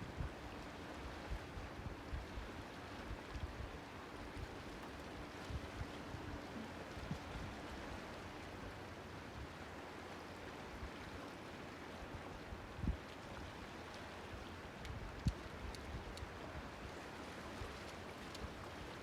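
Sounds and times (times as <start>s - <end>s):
water lapping: 12.5s - 19.0s.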